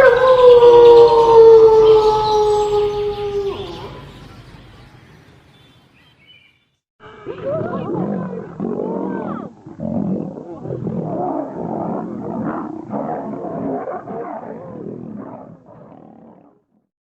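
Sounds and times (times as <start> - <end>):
big cat roaring: 7.3 - 16.6.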